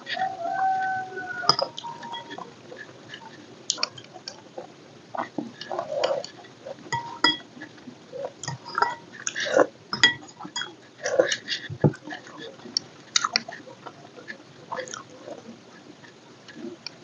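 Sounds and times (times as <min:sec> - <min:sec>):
mouth clicks and smacks: 0:03.2 - 0:04.4, 0:12.7 - 0:13.6, 0:14.7 - 0:15.1.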